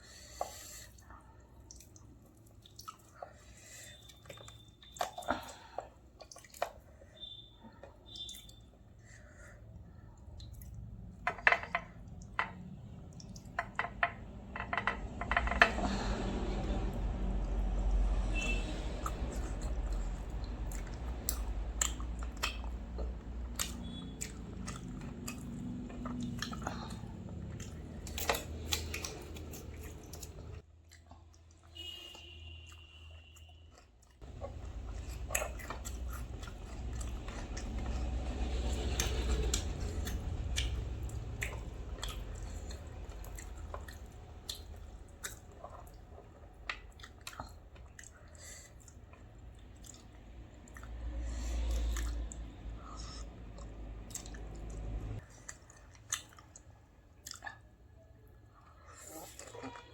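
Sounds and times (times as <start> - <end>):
chewing and crunching food: 0.0 - 59.9
wet mouth clicks and smacks: 19.0 - 31.5, 38.6 - 46.0, 49.7 - 57.7.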